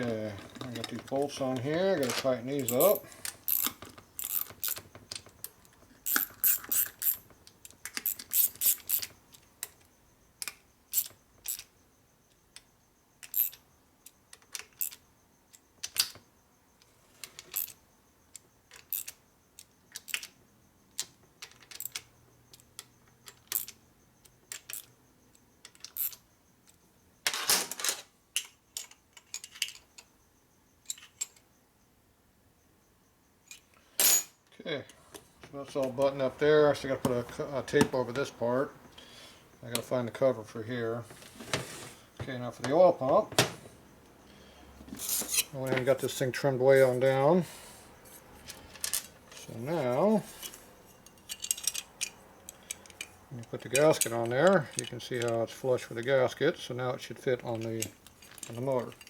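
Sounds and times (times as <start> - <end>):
hand tools clicking on metal: 0.0 - 9.2, 45.0 - 47.2, 48.4 - 56.1, 57.4 - 59.0.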